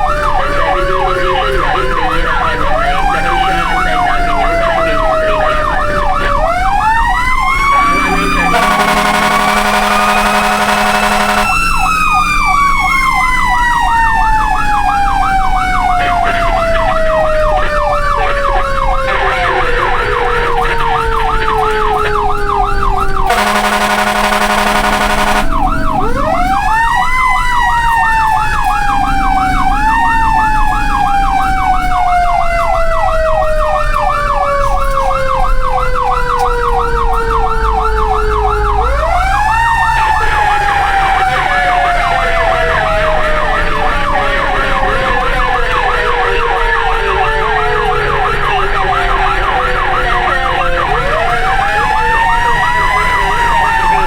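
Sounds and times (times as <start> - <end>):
fast warbling siren: 0.0 - 54.0
fire truck siren wailing: 0.0 - 54.0
horn blast: 6.8 - 12.5, 23.3 - 32.1.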